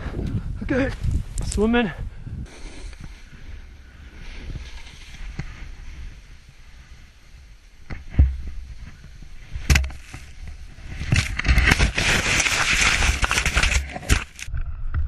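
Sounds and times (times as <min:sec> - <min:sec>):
snow rushing over microphone: 0:02.4 - 0:14.5.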